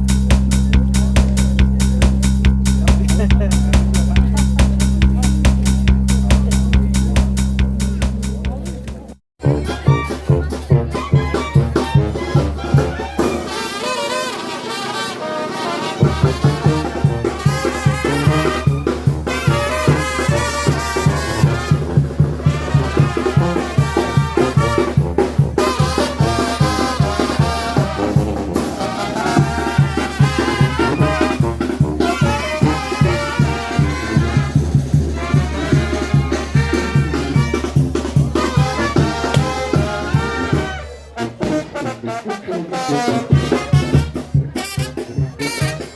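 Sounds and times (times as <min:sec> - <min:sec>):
pulsing low beat: 0:00.0 - 0:11.2
brass band music: 0:00.0 - 0:45.9.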